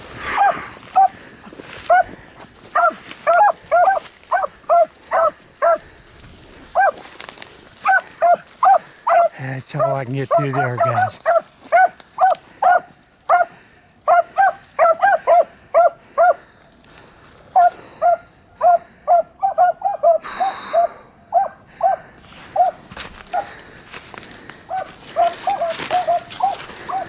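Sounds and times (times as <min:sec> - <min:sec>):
dogs barking: 0:00.3 - 0:05.9, 0:06.7 - 0:07.1, 0:07.8 - 0:16.5, 0:17.5 - 0:23.7, 0:24.6 - 0:27.0.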